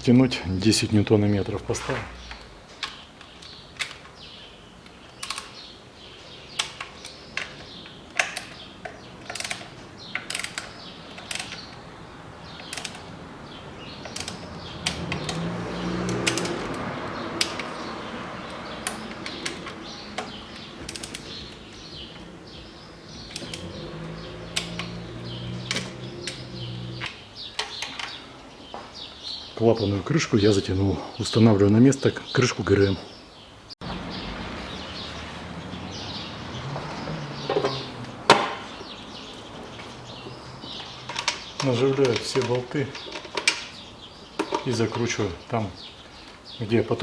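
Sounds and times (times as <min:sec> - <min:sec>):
wrench clicking: 0:09.2 - 0:11.7, 0:12.6 - 0:13.1, 0:14.0 - 0:15.4, 0:16.1 - 0:16.8, 0:20.9 - 0:21.3.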